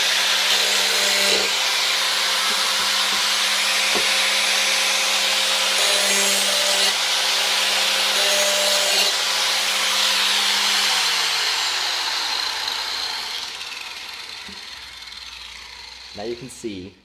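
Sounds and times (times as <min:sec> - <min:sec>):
grinder grinding steel blade: 0:00.0 - 0:16.5
grinder motor winding down: 0:09.1 - 0:16.4.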